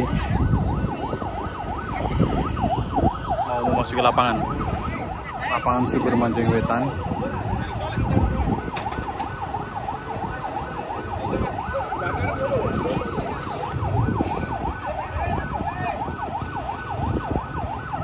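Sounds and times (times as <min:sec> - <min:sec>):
electronic siren yelping: 0:00.0 - 0:18.0
vehicle engines rumbling: 0:00.0 - 0:18.0.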